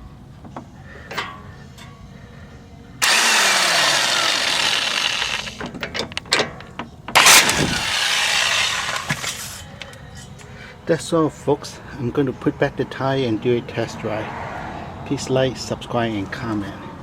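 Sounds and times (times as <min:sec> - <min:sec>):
impact wrench running: 0:07.2 - 0:09.4.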